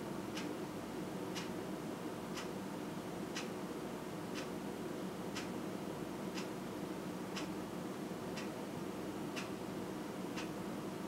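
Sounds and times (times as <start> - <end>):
clock ticking: 2.3 - 2.5, 3.3 - 3.5, 5.3 - 5.5, 6.3 - 6.5, 7.3 - 7.5, 10.4 - 10.6.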